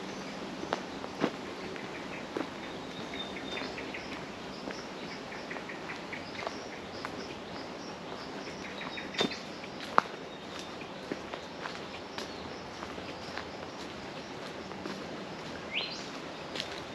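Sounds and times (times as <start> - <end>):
forest birds chirping: 0.0 - 16.9
steady background hiss: 0.0 - 16.9
footsteps on a track: 0.7 - 7.4, 8.1 - 16.9.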